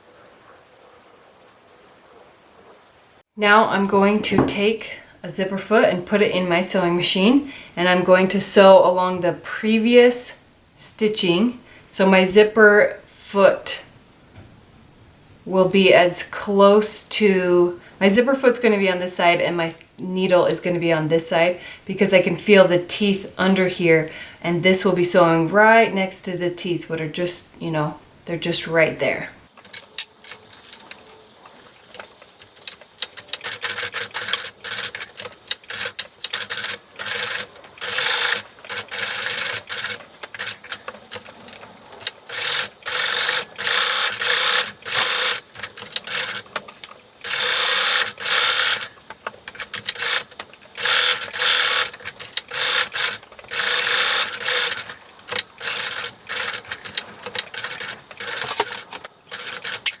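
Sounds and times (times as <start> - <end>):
sewing machine stitching: 32.4 - 41.5, 42.3 - 46.6, 49.5 - 60.0.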